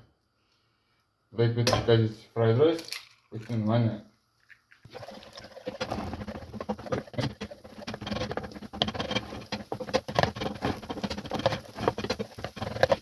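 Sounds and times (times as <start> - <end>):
egg frying in hot oil: 4.6 - 13.0.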